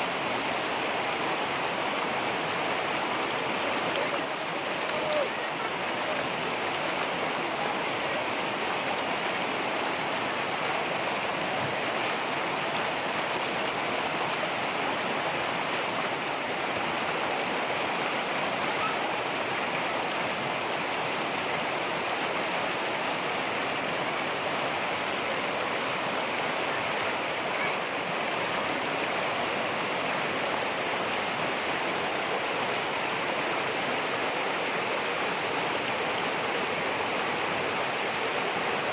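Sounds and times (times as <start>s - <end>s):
water rushing over rocks: 0.0s - 38.9s.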